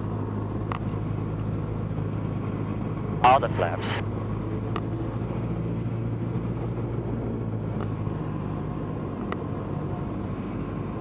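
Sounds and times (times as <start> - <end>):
propeller plane engine droning: 0.0 - 11.0.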